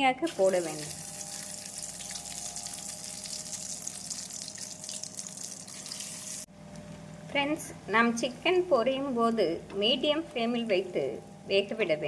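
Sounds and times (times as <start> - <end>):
chicken deep-frying in oil: 0.3 - 6.5.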